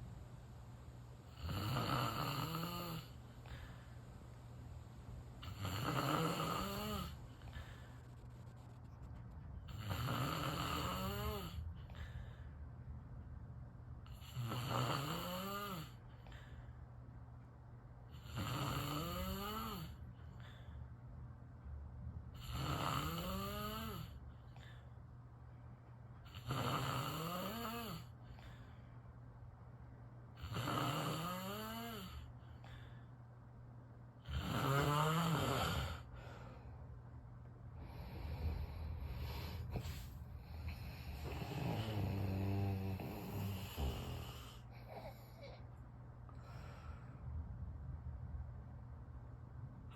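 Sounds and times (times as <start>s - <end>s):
person snoring: 1.3s - 3.7s, 5.4s - 7.8s, 9.7s - 11.6s, 14.2s - 16.0s, 18.2s - 20.0s, 22.4s - 24.2s, 26.3s - 28.1s, 30.4s - 32.3s, 34.2s - 36.1s, 37.8s - 45.6s.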